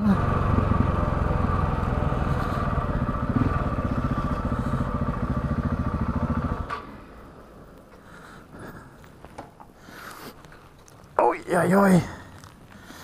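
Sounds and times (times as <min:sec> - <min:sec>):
motorcycle engine running: 0:00.0 - 0:07.6
faint clicks and rustles: 0:07.7 - 0:11.2, 0:12.1 - 0:13.0.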